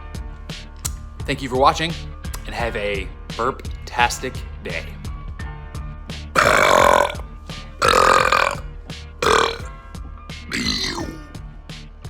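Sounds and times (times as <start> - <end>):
background music: 0.0 - 12.0
man belching loudly: 6.4 - 7.2, 7.8 - 8.6, 9.2 - 9.7, 10.5 - 11.3.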